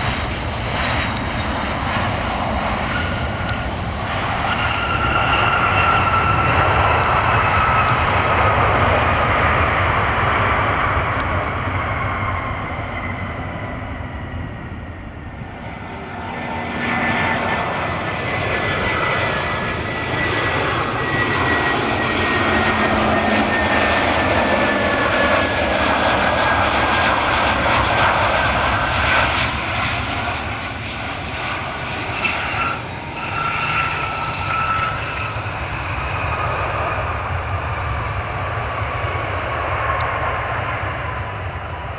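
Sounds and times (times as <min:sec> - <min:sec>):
jet engine whine: 0:00.0 - 0:41.9
jet engines rushing: 0:00.0 - 0:41.9.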